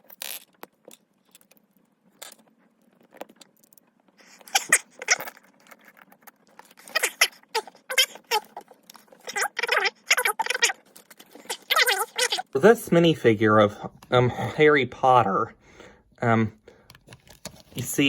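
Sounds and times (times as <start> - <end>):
plastic packaging crinkling: 0.0 - 12.4.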